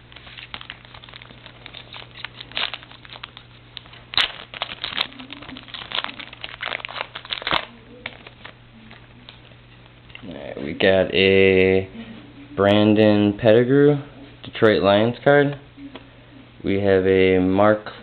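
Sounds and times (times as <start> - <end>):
wrapper crinkling: 0.0 - 10.3.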